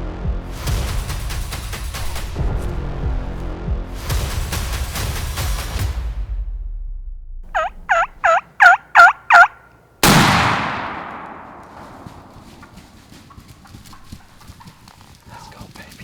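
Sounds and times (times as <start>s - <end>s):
music: 0.0s - 8.0s
turkey gobbling: 7.6s - 9.8s
shotgun blast: 10.0s - 12.7s.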